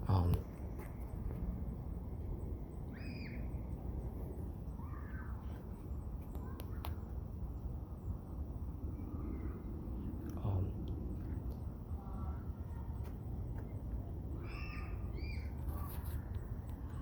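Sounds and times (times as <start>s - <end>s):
low outdoor rumble: 0.0s - 17.0s
faint distant calls: 9.0s - 17.0s.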